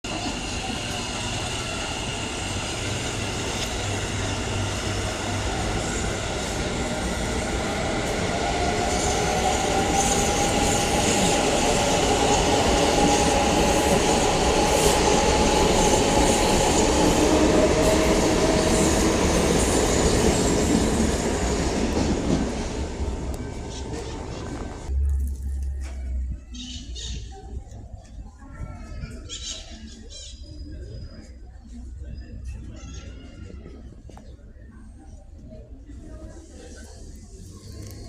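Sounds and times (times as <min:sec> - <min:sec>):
electric train passing: 0:00.1 - 0:26.4.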